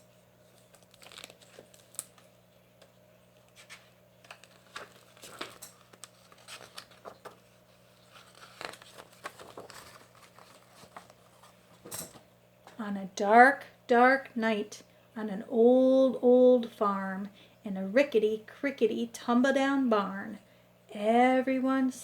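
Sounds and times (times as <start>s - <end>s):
low electrical hum: 0.0s - 22.0s
paper rustling and crinkling: 0.4s - 2.3s, 3.4s - 12.3s.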